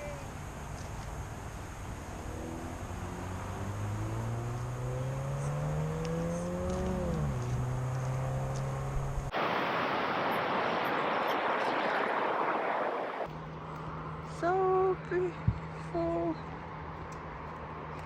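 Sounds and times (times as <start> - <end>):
low engine-like hum: 0.0 - 9.5, 11.0 - 18.0
steady rushing noise: 6.8 - 13.7.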